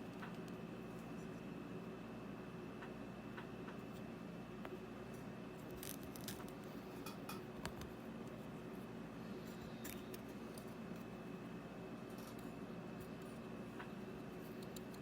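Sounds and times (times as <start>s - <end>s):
faint hum: 0.0s - 15.0s.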